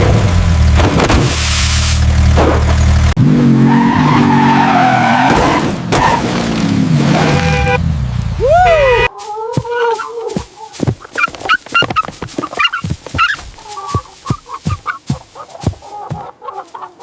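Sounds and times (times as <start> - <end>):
car engine running hard: 0.0 - 9.0
tires skidding and squealing: 3.3 - 7.8.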